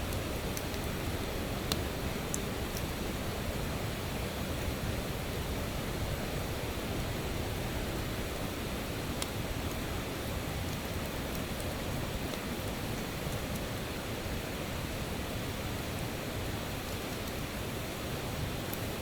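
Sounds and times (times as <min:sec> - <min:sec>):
campfire crackling: 0:00.0 - 0:03.6.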